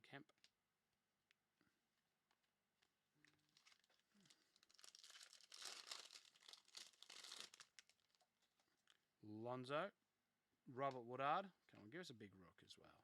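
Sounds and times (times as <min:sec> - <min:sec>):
wrapper crinkling and tearing: 0:03.4 - 0:08.2.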